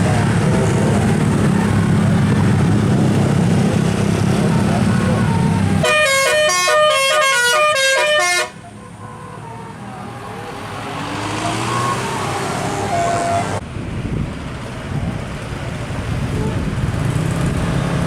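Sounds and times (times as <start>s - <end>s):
vehicle and road noise: 0.0s - 18.0s
musical air horn tune: 5.8s - 8.6s.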